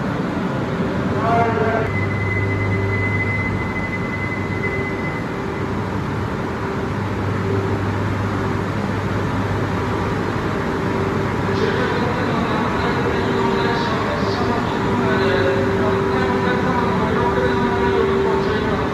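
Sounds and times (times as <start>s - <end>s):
train humming and rumbling: 0.0s - 18.9s
faint high tone: 1.8s - 5.4s.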